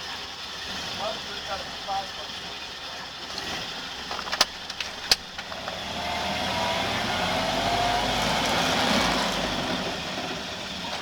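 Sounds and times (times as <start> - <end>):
sharp clicks: 4.3 - 5.8
car driving by: 5.4 - 10.9.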